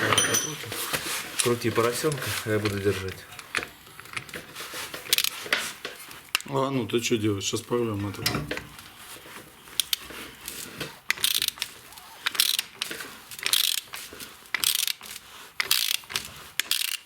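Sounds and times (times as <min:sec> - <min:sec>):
ratchet clicking: 0:11.1 - 0:12.8, 0:13.4 - 0:13.9, 0:14.5 - 0:17.0.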